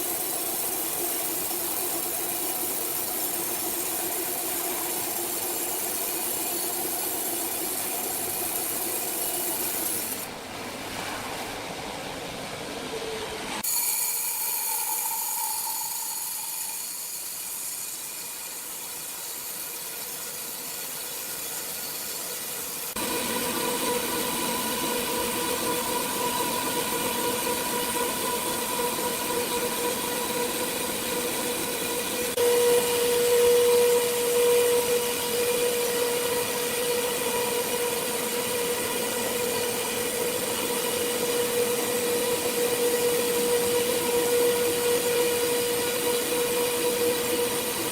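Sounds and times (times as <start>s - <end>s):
sawmill machinery whining: 23.0s - 47.9s.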